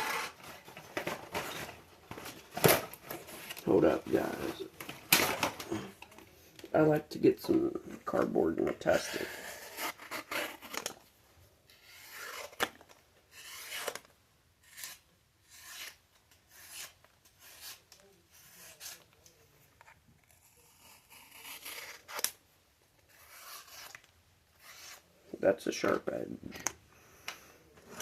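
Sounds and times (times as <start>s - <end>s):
knife scraping through cardboard: 0.0s - 1.7s, 9.0s - 10.9s, 11.8s - 12.7s, 13.3s - 19.1s, 20.3s - 22.3s, 23.1s - 25.1s.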